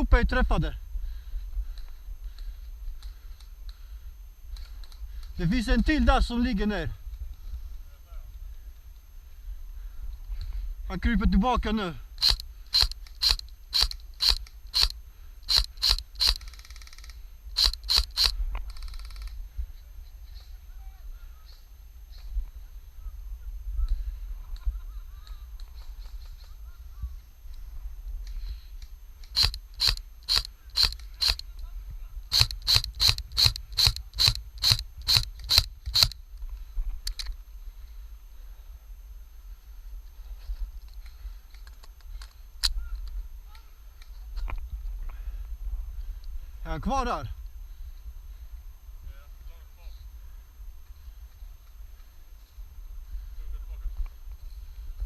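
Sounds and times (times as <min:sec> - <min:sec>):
airsoft rifle shots: 0:11.8 - 0:14.9, 0:15.5 - 0:19.2, 0:29.2 - 0:31.4, 0:32.3 - 0:36.2
airsoft rifle rapid rattle: 0:12.2 - 0:19.4, 0:29.2 - 0:31.6, 0:32.3 - 0:36.2, 0:37.0 - 0:37.4.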